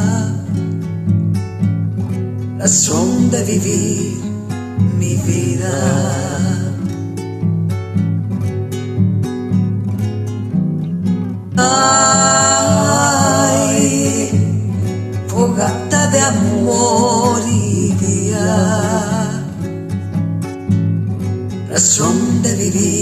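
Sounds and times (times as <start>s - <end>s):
person singing with vibrato: 0.0s - 0.6s, 2.6s - 7.0s, 11.6s - 19.7s, 21.7s - 23.0s
acoustic guitar: 0.0s - 23.0s.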